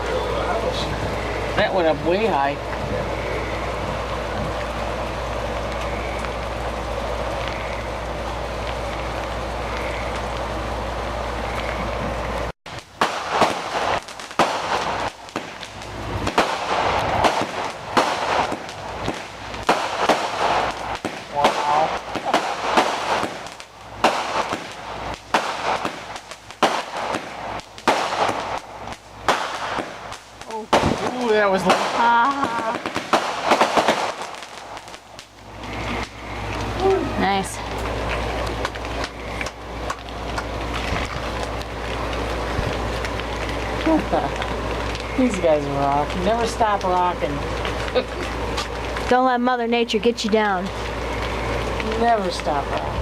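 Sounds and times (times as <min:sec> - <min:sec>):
fireworks pops and crackling: 0:00.0 - 0:53.0
low steady hum: 0:00.0 - 0:53.0
steady rain falling: 0:00.0 - 0:53.0
fireworks loud bangs: 0:11.5 - 0:53.0.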